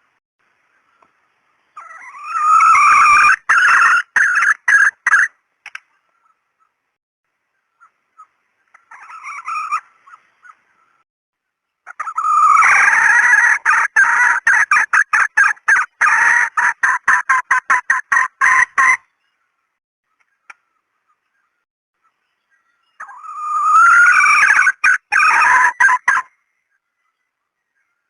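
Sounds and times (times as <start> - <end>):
junglefowl calls: 1.8 - 6.8, 7.8 - 11.0, 11.9 - 19.1, 23.0 - 26.6.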